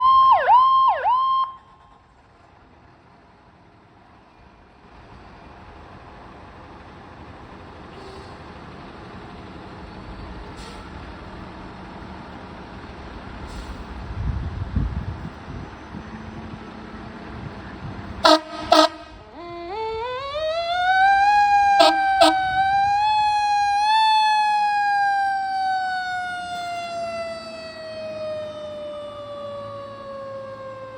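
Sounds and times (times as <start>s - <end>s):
fire engine siren wailing: 0.0s - 2.2s, 18.2s - 30.9s
diesel engine rumble: 1.2s - 30.9s
air horn blast: 18.2s - 19.5s, 21.7s - 22.8s.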